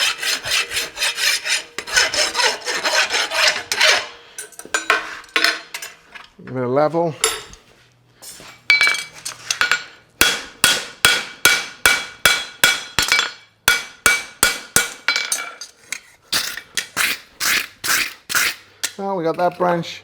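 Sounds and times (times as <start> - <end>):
hammer striking horseshoe on anvil: 0.0 - 5.6, 8.7 - 15.7.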